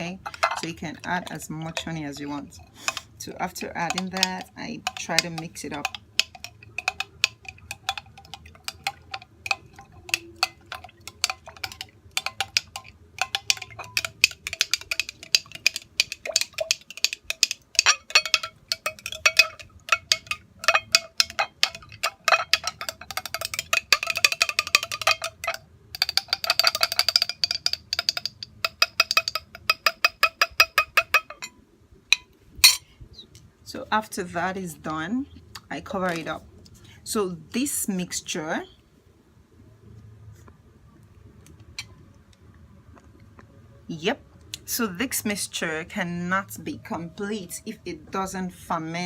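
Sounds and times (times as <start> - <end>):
spoon clinking in glass jar: 0.1 - 31.6, 32.2 - 32.9.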